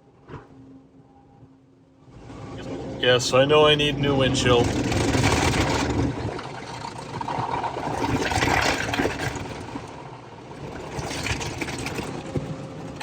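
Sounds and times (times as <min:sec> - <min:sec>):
car wash rushing: 0:02.2 - 0:13.0
knocks and rattles: 0:04.6 - 0:10.0.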